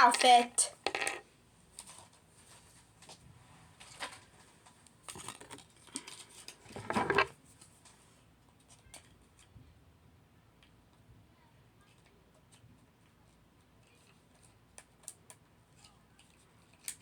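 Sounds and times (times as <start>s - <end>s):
small items being handled: 0.0s - 1.2s, 5.0s - 7.9s.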